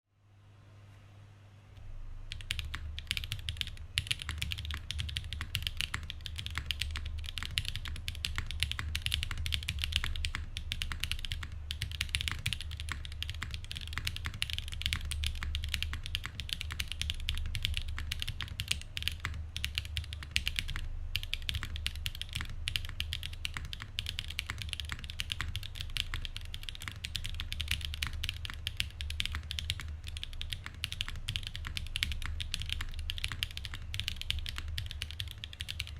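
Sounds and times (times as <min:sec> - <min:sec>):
mechanical keyboard typing: 0:02.3 - 0:35.9.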